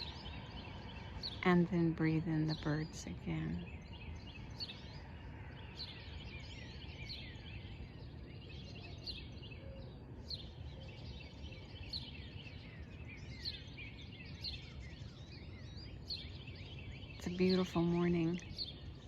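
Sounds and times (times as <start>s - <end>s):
birds chirping and singing: 0.0s - 19.0s.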